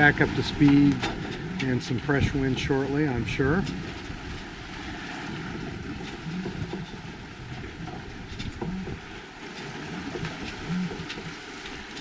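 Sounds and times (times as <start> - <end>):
water rushing past boat: 0.0 - 12.0.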